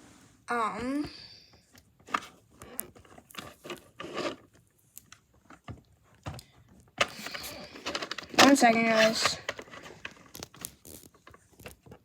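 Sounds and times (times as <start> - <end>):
plastic rustling: 7.0 - 12.0.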